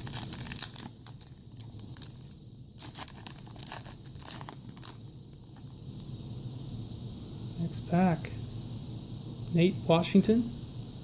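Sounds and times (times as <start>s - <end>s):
foil wrapper crinkling: 0.0s - 6.1s.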